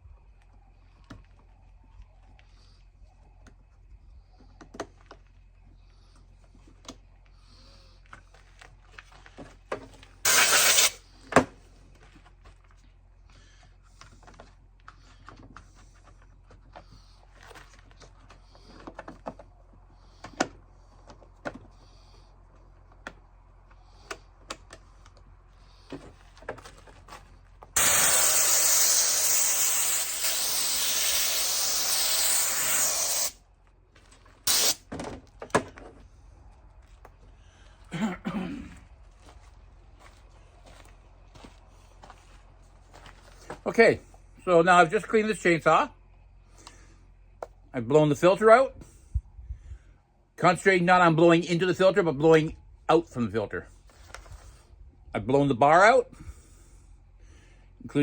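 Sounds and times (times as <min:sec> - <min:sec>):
compressed air blow gun hissing: 0:10.2 - 0:11.0, 0:27.8 - 0:33.4, 0:34.5 - 0:34.8.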